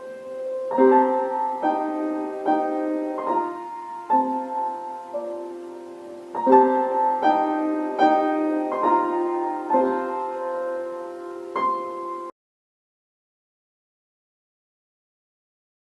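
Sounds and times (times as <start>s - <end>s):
slow piano chords: 0.0s - 12.3s.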